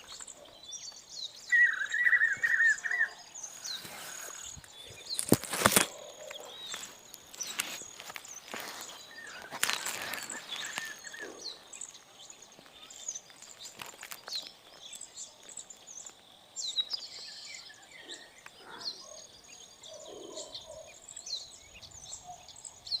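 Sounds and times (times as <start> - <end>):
small birds chirping: 0.0 - 23.0
rustling: 3.6 - 11.4.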